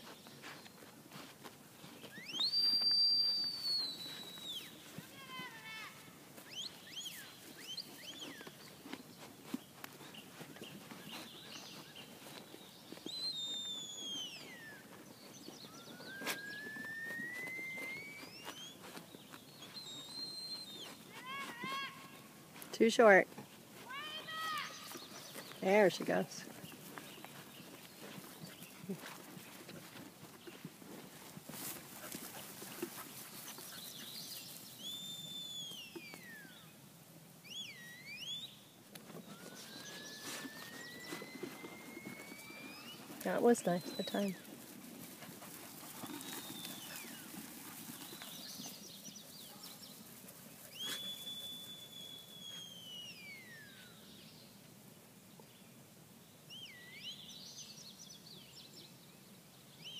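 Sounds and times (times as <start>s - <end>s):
shepherd's whistle: 2.1s - 4.8s, 13.0s - 15.0s, 15.6s - 19.0s, 19.6s - 21.8s, 34.8s - 36.6s, 37.4s - 38.6s, 39.3s - 43.1s, 50.7s - 54.0s, 56.5s - 57.2s.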